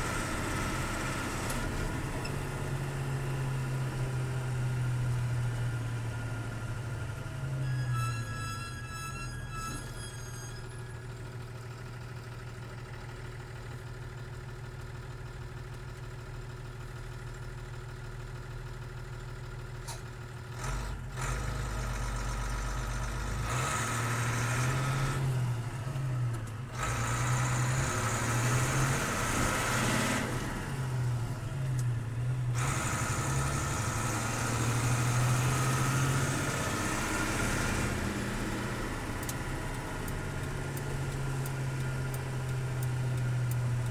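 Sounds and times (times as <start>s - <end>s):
diesel truck engine revving: 20.5s - 43.9s.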